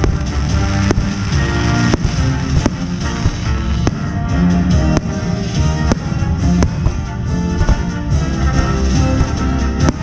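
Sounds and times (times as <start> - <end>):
sharp cracks: 0.0 - 4.2
music with guitar and drums: 0.0 - 10.0.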